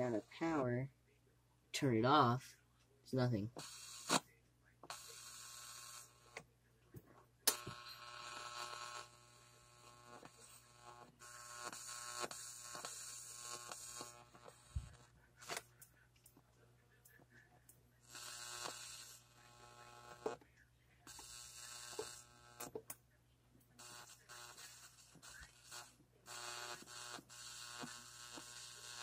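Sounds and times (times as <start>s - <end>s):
mains hum: 0.0s - 29.0s
electrical buzz through amplifier: 3.5s - 15.8s, 18.0s - 20.5s, 21.1s - 23.0s, 23.7s - 29.0s.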